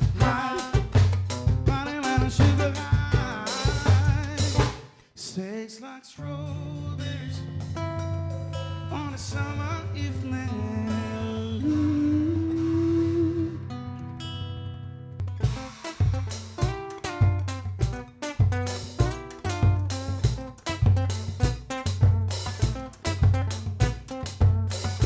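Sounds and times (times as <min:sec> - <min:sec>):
song with drums and singing: 0:00.0 - 0:04.9
instrumental song introduction: 0:00.0 - 0:05.5, 0:06.2 - 0:25.0.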